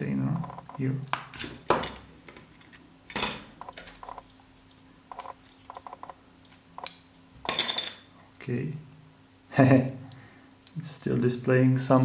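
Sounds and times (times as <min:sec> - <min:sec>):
small parts and tools clicking: 0:03.1 - 0:04.3, 0:05.1 - 0:07.9.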